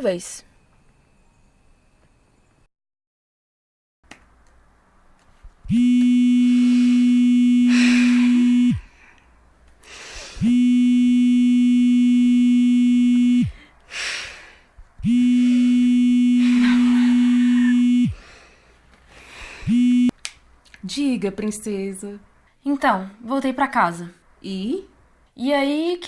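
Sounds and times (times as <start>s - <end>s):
phone vibrating on hard surface: 5.7s - 8.9s, 10.4s - 13.7s, 15.0s - 18.2s.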